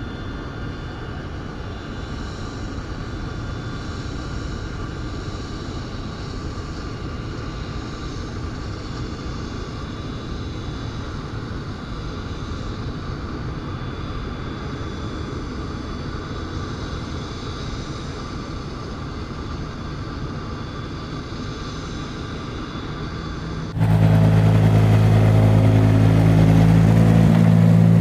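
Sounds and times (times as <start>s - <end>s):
motor running with whine: 22.8s - 28.0s.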